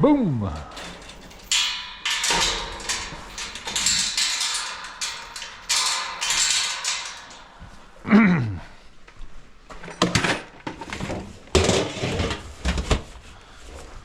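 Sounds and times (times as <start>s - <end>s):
grain rattling against metal pans: 0.7s - 8.1s, 9.8s - 12.6s.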